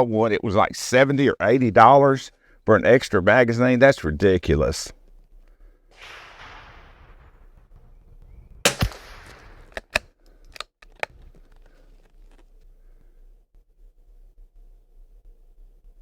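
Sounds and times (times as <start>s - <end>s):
rifle shot: 5.9s - 10.1s
metallic clicks of rifle action: 8.7s - 12.4s.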